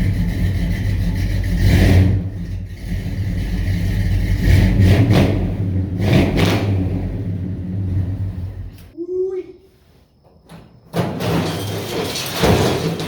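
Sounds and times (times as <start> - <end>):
pickup truck engine revving: 0.0 - 8.9.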